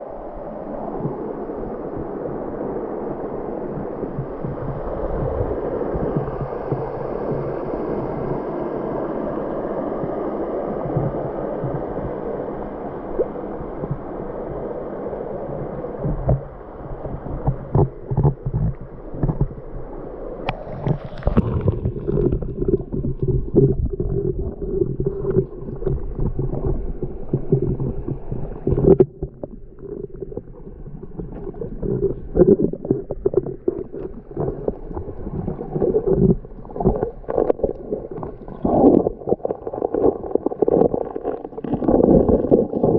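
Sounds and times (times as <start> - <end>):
muffled underwater gurgling: 0.0 - 42.9.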